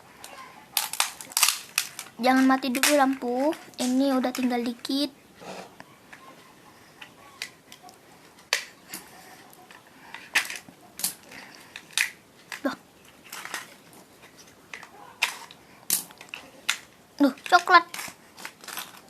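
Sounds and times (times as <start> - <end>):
wrapper crinkling and tearing: 0.7 - 4.0, 17.5 - 19.0.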